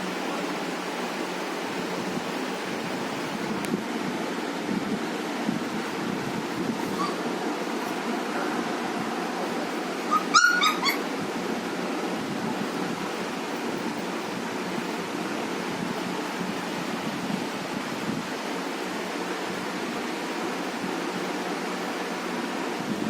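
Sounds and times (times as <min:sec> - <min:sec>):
steady background noise: 0:00.0 - 0:23.0
puppy yipping: 0:06.9 - 0:07.2, 0:10.1 - 0:11.1.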